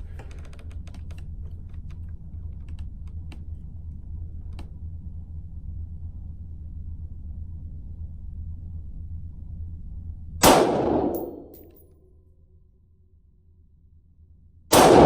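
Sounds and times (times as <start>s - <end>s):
light clicks and taps: 0.0s - 3.6s
steady low hum: 0.0s - 11.8s, 12.5s - 15.0s.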